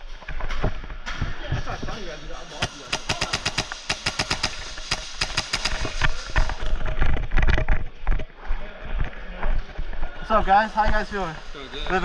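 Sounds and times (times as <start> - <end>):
airsoft guns firing: 2.6 - 6.5.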